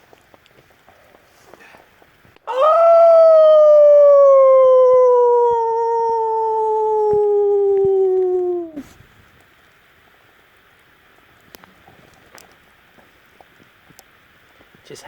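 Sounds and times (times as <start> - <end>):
man howling: 2.5 - 8.9.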